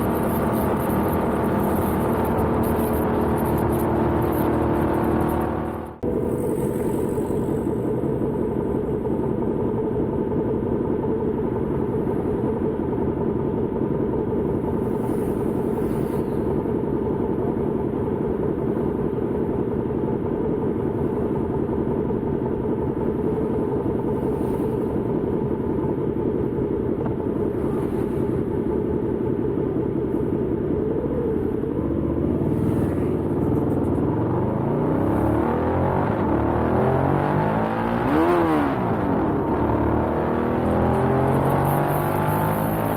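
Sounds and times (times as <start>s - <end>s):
motorcycle engine cruising: 0.0s - 8.3s, 23.0s - 42.9s
rushing wind: 0.0s - 42.9s.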